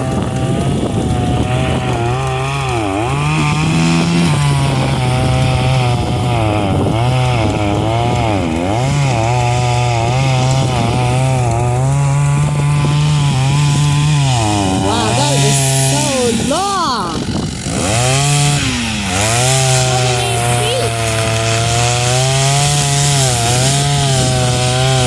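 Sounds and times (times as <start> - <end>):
chainsaw cutting wood: 0.0 - 25.0.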